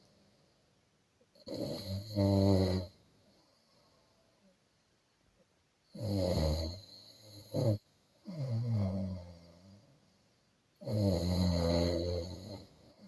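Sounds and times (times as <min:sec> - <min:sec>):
person snoring: 0:01.4 - 0:02.9, 0:05.9 - 0:09.8, 0:10.8 - 0:13.0.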